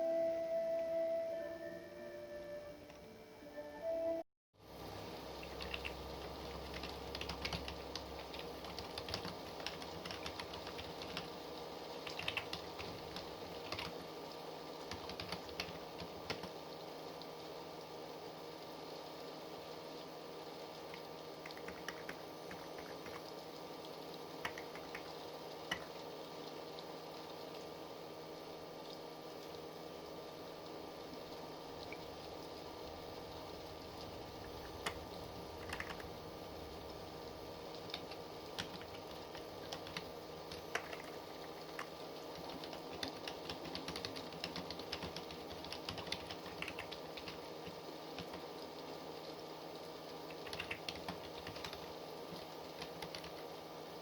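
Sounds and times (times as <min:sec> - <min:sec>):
steady background hum: 0:00.0 - 0:54.0
keyboard keystrokes: 0:06.6 - 0:11.3, 0:12.0 - 0:14.0, 0:14.9 - 0:16.5, 0:21.5 - 0:23.3, 0:24.4 - 0:25.1, 0:25.7 - 0:26.0, 0:35.6 - 0:36.1, 0:37.8 - 0:47.4, 0:50.3 - 0:51.8, 0:52.8 - 0:53.4.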